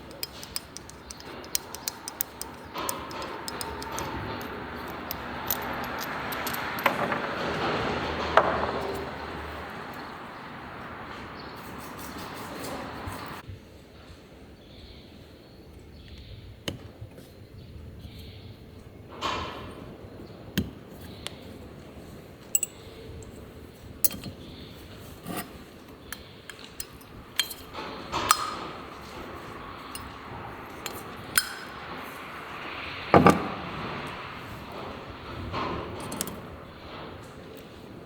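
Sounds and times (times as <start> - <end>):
metal tools clinking: 0.0 - 10.1, 22.4 - 23.4, 24.0 - 32.2, 36.0 - 36.5.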